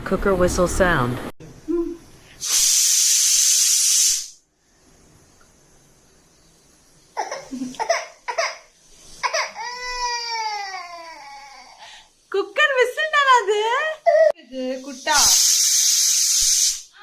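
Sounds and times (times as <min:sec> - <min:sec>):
pressure cooker whistle hissing: 0:02.4 - 0:04.4, 0:14.8 - 0:17.0
baby whimpering and crying: 0:09.2 - 0:11.8, 0:14.0 - 0:14.4.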